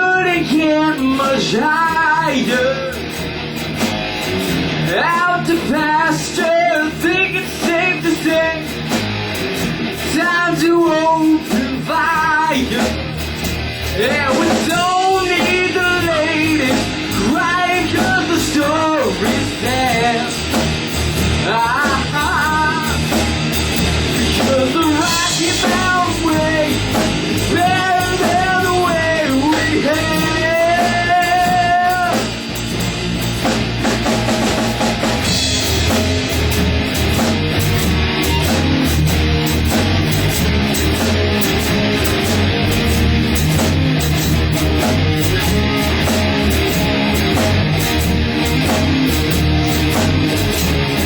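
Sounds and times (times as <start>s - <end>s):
man singing: 0.0s - 3.2s, 4.8s - 8.8s, 10.0s - 13.2s, 13.8s - 20.8s, 21.4s - 23.3s, 24.1s - 32.5s
electric guitar: 0.0s - 51.0s
rock band playing: 0.0s - 51.0s.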